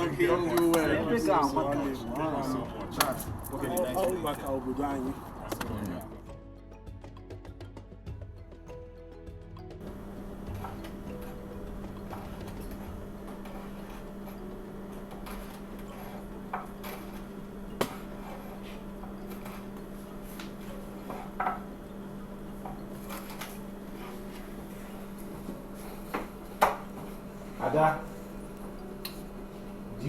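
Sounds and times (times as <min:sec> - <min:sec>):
steady low hum: 0:09.8 - 0:30.0.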